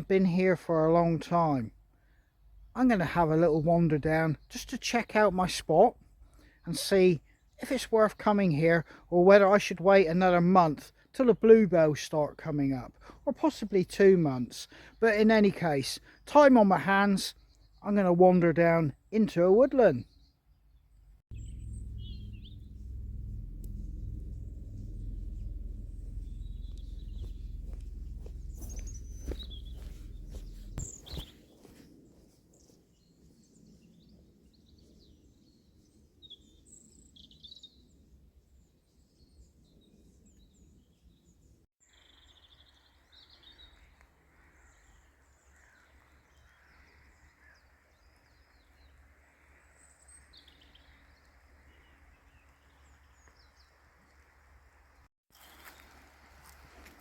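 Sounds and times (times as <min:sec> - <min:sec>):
birds chirping: 0:19.9 - 0:32.0.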